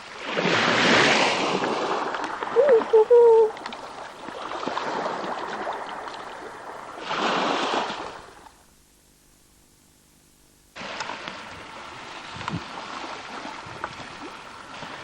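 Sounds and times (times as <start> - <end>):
water and wind noise: 0.0 - 8.7, 10.8 - 15.0
loud pitched tone: 2.6 - 3.5.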